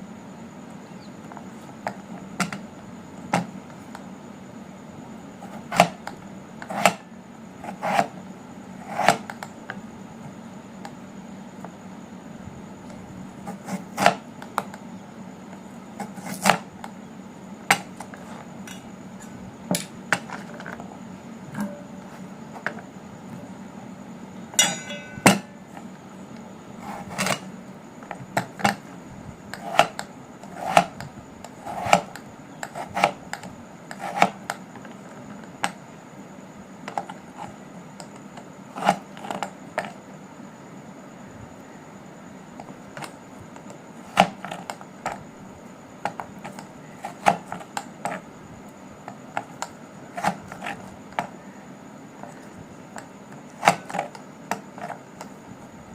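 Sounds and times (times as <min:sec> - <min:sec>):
faint steady hum: 0:00.0 - 0:55.9
utensils knocking and clinking: 0:24.6 - 0:25.6.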